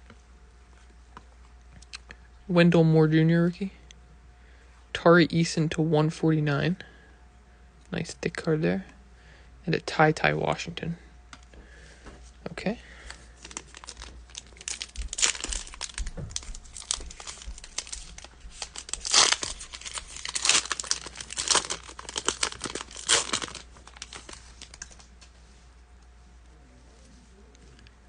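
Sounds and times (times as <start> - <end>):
plastic wrapper crinkling and tearing: 13.0 - 25.3.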